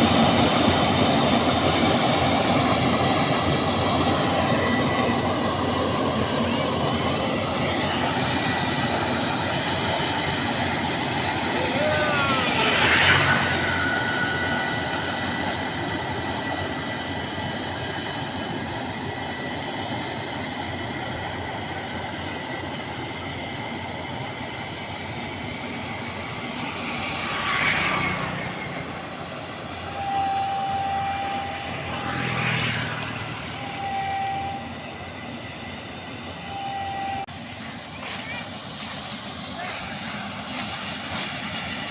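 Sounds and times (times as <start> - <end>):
combine harvester running: 0.0 - 41.9
short steady tone: 11.9 - 17.0, 27.4 - 38.4.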